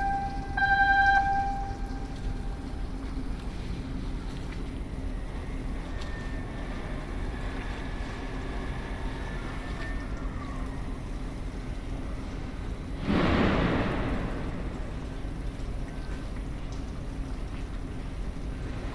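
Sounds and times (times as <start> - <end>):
faint thin high tone: 0.0 - 2.0
low rumble of machinery and traffic: 0.0 - 18.9.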